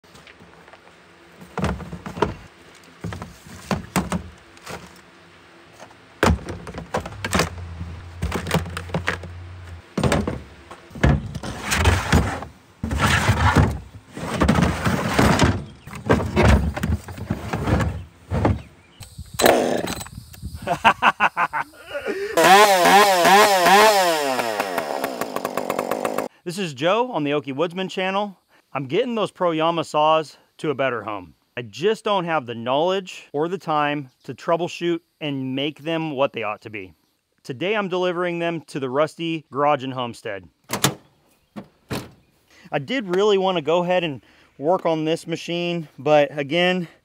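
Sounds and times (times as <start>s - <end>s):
knocks thuds and clattering: 1.4s - 4.9s, 6.2s - 18.7s, 40.7s - 42.2s.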